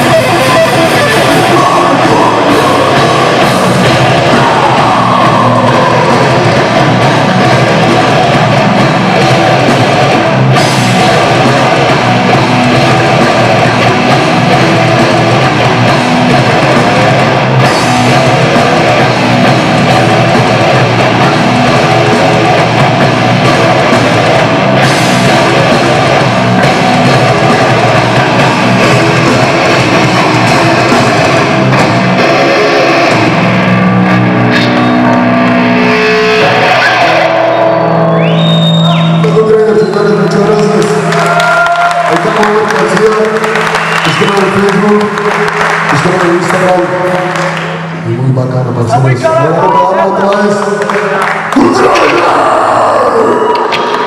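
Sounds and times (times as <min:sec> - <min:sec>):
drum kit pounding: 0:00.0 - 0:47.9
distorted guitars: 0:00.0 - 0:54.0.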